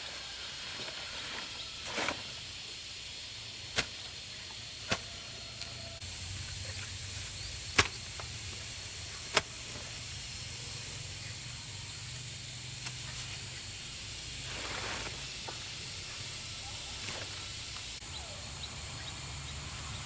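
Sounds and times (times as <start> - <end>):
high hiss: 0.0 - 20.0.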